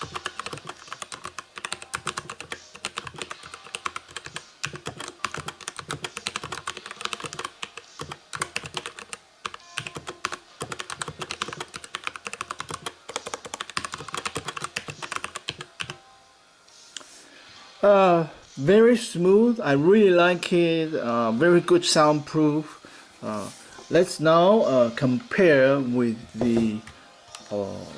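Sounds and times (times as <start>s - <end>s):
fast typing on mechanical keyboard: 0.0s - 16.0s.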